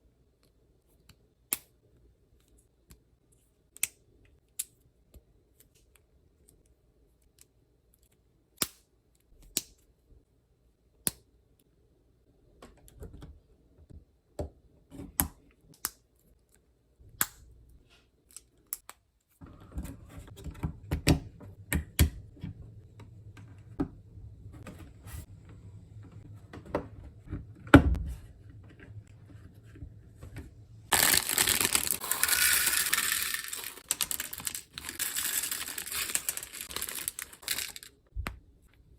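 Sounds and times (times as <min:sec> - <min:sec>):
plastic bricks clicking: 0:30.9 - 0:37.9.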